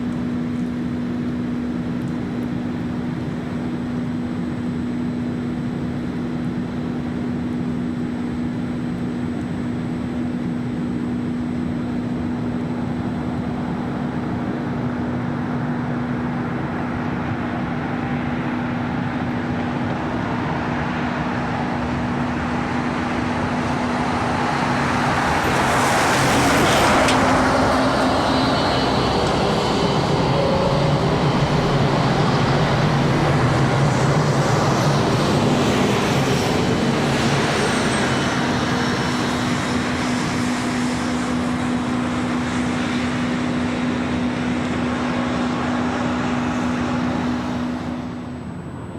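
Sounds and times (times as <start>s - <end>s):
tram humming: 0.0s - 48.9s
tram rumbling past: 12.7s - 48.9s.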